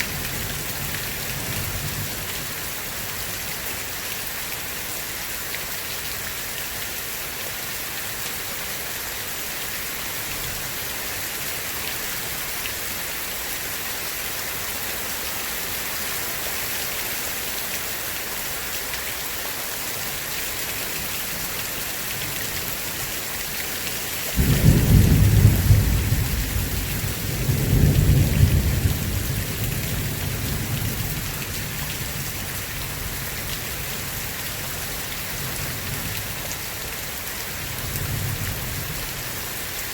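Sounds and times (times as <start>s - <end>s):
heavy rain hissing: 15.7s - 39.9s
thunder rumbling: 24.4s - 31.0s.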